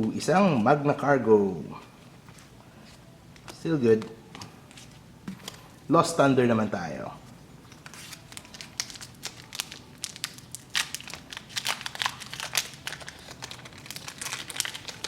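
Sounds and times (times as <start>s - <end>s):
foil wrapper tearing and crinkling: 7.8s - 15.0s.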